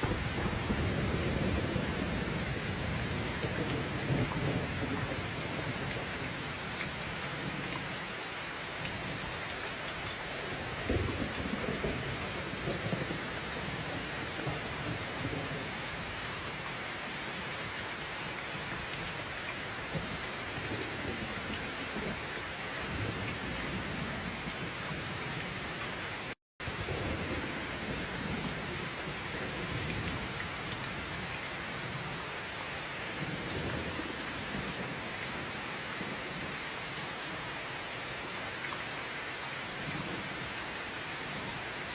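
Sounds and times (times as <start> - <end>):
low thunder rumbles: 0.0 - 6.4
steady rain: 0.0 - 41.9.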